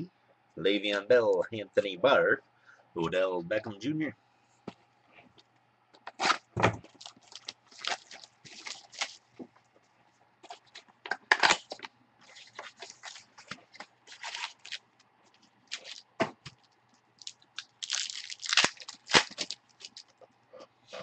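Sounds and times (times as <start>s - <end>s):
card pack wrappers crinkling: 6.1s - 9.3s, 10.5s - 20.2s.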